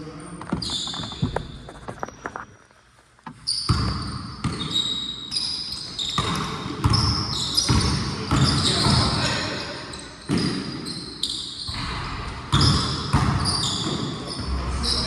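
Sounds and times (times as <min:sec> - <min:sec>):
sneaker squeaks: 0:00.4 - 0:15.0
basketball bouncing on a court: 0:03.3 - 0:05.0, 0:06.0 - 0:09.4, 0:11.6 - 0:14.5.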